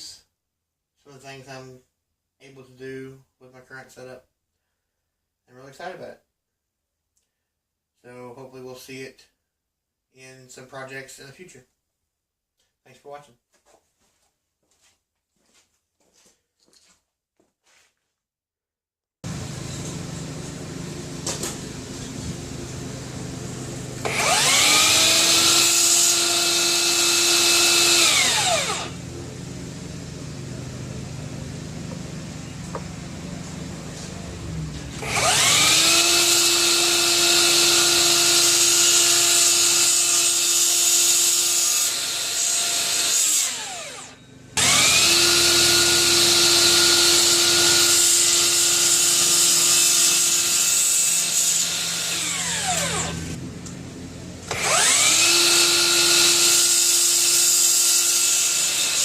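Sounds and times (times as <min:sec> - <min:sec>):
miter saw motor whining: 0:19.3 - 0:59.0.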